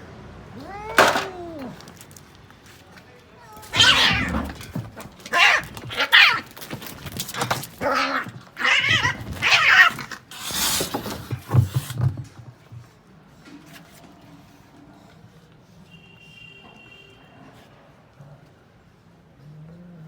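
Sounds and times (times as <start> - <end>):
cats yowling and growling: 0.4 - 2.2, 3.5 - 11.7.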